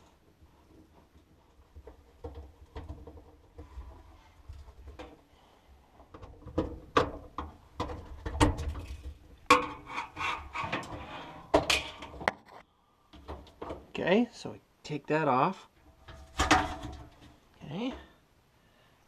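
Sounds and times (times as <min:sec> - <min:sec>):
hard plastic knocks and scraping: 0:06.0 - 0:13.9, 0:16.0 - 0:17.4.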